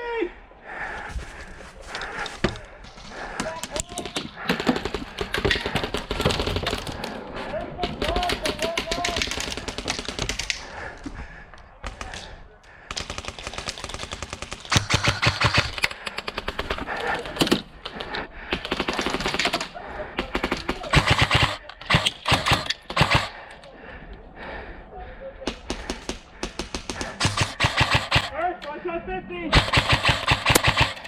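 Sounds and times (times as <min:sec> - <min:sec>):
airsoft guns firing full-auto: 0:01.2 - 0:07.2, 0:07.8 - 0:11.0, 0:11.8 - 0:17.7, 0:18.5 - 0:23.7, 0:25.5 - 0:28.5, 0:29.5 - 0:31.0.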